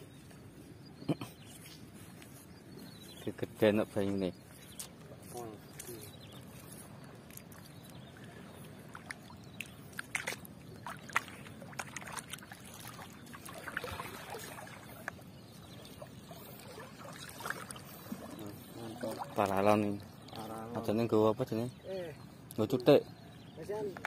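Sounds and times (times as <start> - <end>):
water sloshing and dripping: 7.3 - 20.6
low rush of water: 9.9 - 15.2.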